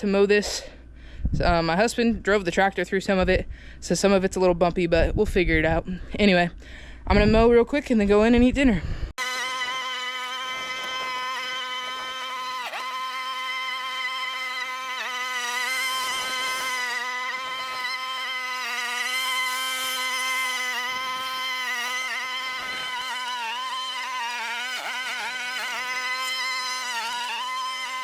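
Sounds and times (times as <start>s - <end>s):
lawn mower engine droning: 9.2s - 28.0s.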